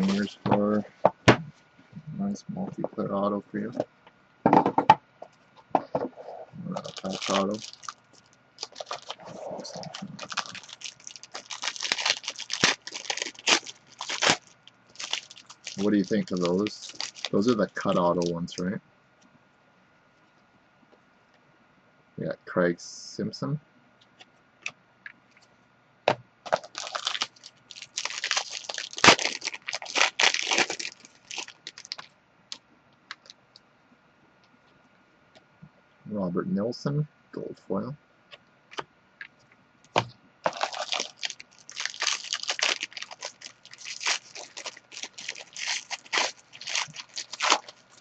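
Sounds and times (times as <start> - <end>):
card packaging crinkling: 0.0 - 0.4, 6.7 - 18.6, 26.5 - 32.1, 39.9 - 48.0.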